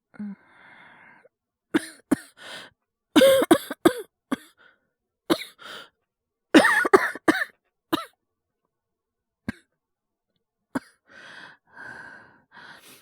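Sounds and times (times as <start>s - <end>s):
man coughing: 3.2s - 4.0s, 6.6s - 8.1s.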